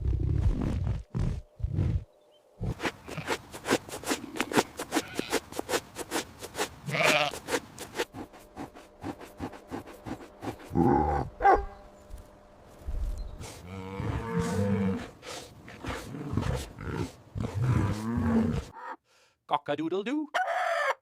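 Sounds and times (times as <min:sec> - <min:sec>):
livestock bleating: 0:05.0 - 0:05.4, 0:06.8 - 0:07.4.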